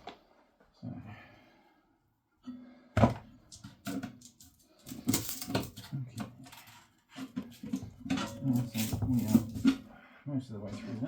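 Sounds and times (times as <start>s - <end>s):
metal clanks and knocks: 4.9s - 9.9s.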